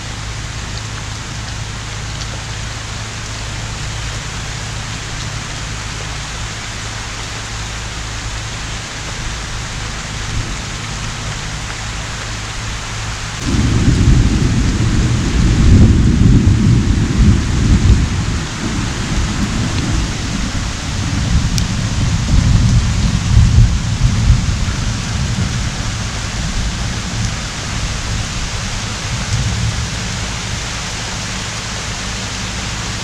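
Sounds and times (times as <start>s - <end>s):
heavy rain: 0.0s - 33.0s
low thunder rumble: 9.4s - 33.0s.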